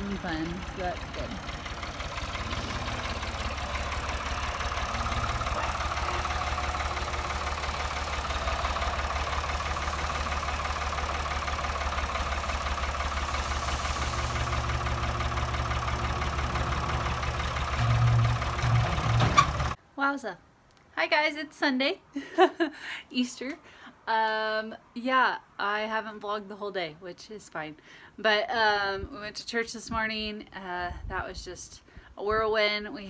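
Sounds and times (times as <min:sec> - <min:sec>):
tractor engine rumbling: 0:00.0 - 0:19.8.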